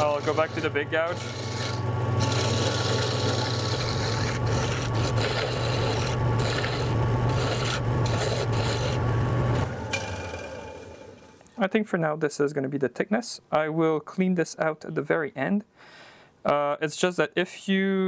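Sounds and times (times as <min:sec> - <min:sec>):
gouge scraping wood: 0:00.0 - 0:09.8
lathe motor humming: 0:00.0 - 0:11.4.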